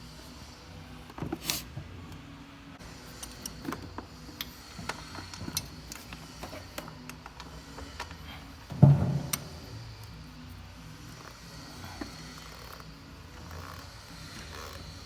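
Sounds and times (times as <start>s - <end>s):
tools clicking and knocking: 3.1s - 8.2s.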